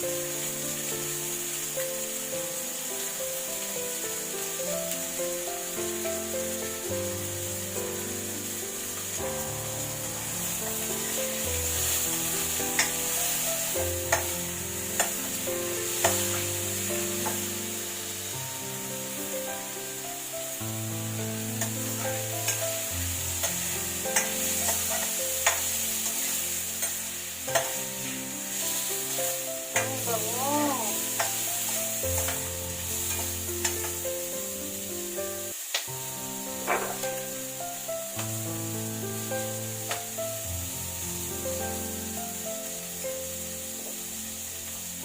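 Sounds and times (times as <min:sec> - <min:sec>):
food sizzling in a pan: 0:00.0 - 0:45.0
soft background music: 0:00.0 - 0:45.0
spatula clicking on pan: 0:12.8 - 0:13.0, 0:14.1 - 0:14.3, 0:14.9 - 0:15.2, 0:15.9 - 0:16.4, 0:17.2 - 0:17.4, 0:23.4 - 0:26.2, 0:26.8 - 0:27.8, 0:29.8 - 0:30.1, 0:31.1 - 0:31.5, 0:32.2 - 0:32.5, 0:33.1 - 0:34.0.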